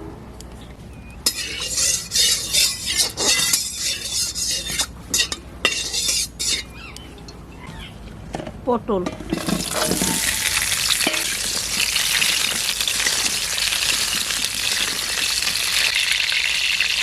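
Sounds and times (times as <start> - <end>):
vegetables sizzling in hot oil: 9.4 - 17.0.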